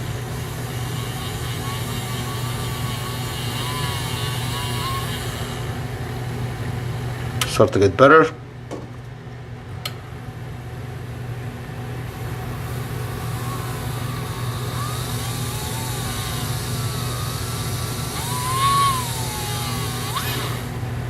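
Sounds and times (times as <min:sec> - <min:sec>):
polishing wheel hiss: 0:00.0 - 0:05.7, 0:12.1 - 0:20.8
wavering whine of tool: 0:00.0 - 0:05.9, 0:11.8 - 0:21.0
polishing wheel motor hum: 0:00.0 - 0:06.8, 0:10.6 - 0:21.0.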